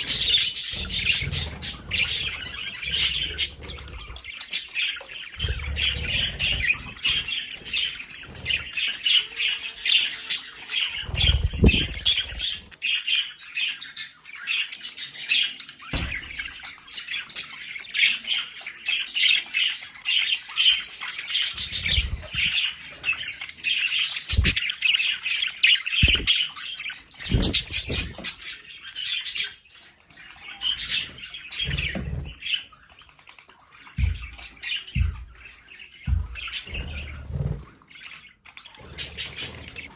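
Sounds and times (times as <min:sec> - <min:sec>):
budgerigars chattering: 0:00.0 - 0:32.8, 0:33.8 - 0:39.9
short low thumps: 0:26.0 - 0:26.3.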